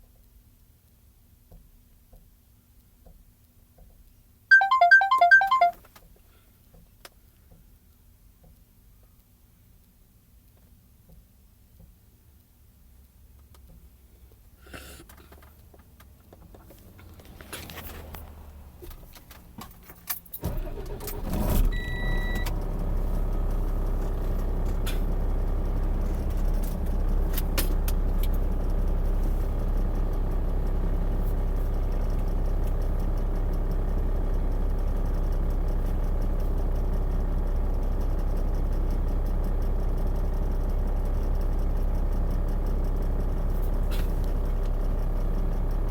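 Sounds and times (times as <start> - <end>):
short electronic beep: 4.5 - 5.8
car engine starting and idling: 15.1 - 45.9.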